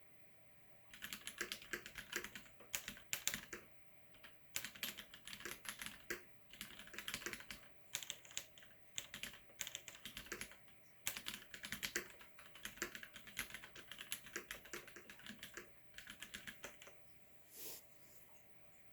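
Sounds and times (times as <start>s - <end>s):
mechanical keyboard typing: 0.9s - 17.0s.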